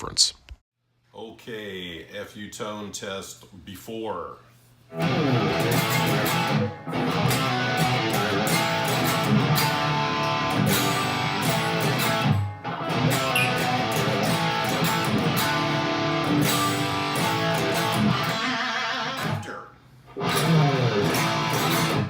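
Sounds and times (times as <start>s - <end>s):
electric guitar playing: 4.9s - 19.5s, 20.1s - 22.0s.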